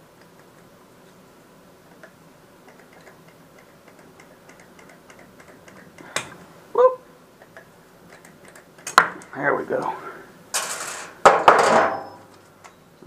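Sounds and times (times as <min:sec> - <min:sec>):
faint ticking: 0:01.8 - 0:06.3
metal clank ringing: 0:10.6 - 0:12.3.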